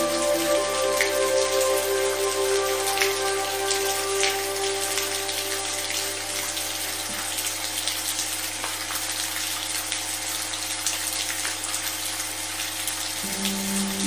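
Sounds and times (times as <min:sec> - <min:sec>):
low sustained drone: 0:00.0 - 0:07.6, 0:13.2 - 0:14.0
steady rain: 0:00.0 - 0:14.0.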